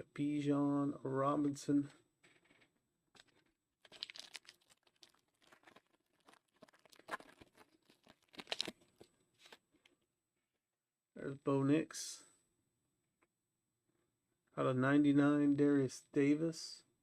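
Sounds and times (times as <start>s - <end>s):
cards rustling and ticking: 3.2s - 9.6s.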